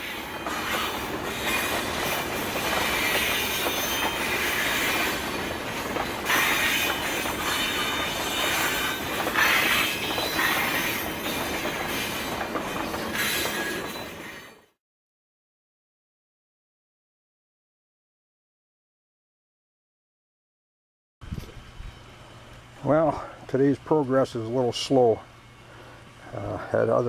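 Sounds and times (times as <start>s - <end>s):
freight train rumble and clatter: 0.0s - 14.7s
train wheels squealing on rails: 0.0s - 14.7s.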